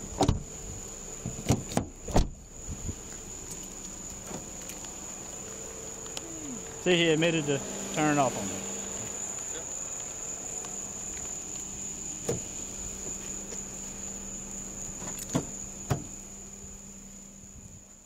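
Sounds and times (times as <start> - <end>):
night insects trilling: 0.0 - 18.0.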